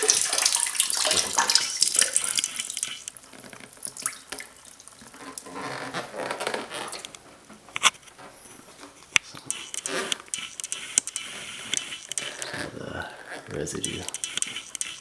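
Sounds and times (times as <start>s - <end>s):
water trickling into a toilet: 0.0s - 5.7s
sharp clicks: 2.1s - 3.7s, 9.0s - 12.8s, 13.4s - 15.0s.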